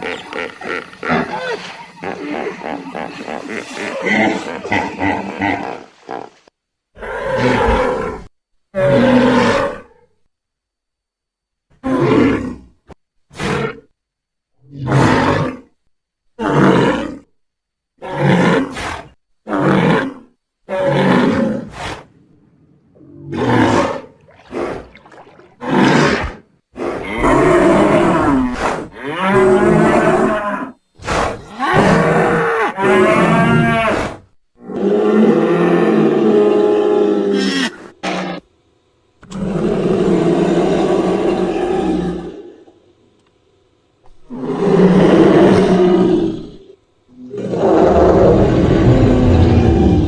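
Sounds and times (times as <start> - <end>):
dinosaur roars and grunts: 25.6 - 38.4, 39.2 - 42.7, 44.2 - 50.0.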